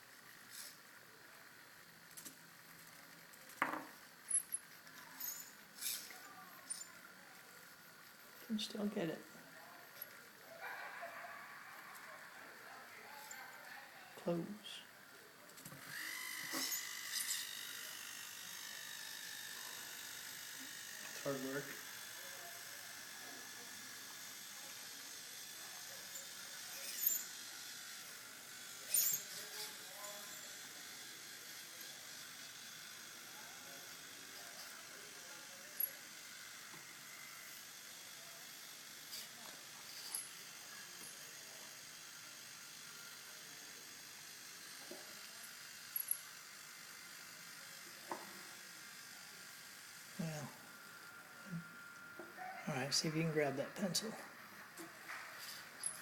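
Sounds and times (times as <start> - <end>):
servos hissing: 15.7 - 21.8, 26.0 - 32.5
servo squeak: 16.0 - 17.6, 26.7 - 27.4, 28.9 - 30.4.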